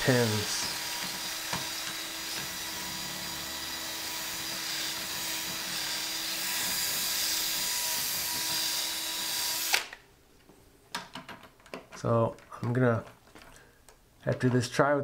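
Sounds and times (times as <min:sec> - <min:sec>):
power drill grinding into lock: 0:00.1 - 0:10.0.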